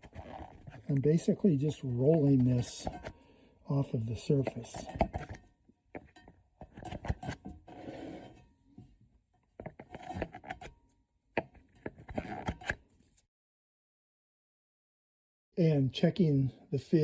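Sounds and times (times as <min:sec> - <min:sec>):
hands scraping speaker cone: 0:00.0 - 0:03.2, 0:03.9 - 0:08.4, 0:09.6 - 0:10.7.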